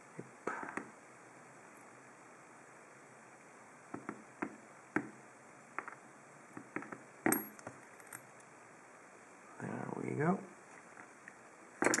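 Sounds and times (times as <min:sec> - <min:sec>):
small metal parts clinking: 0:07.3 - 0:08.2, 0:11.8 - 0:12.0.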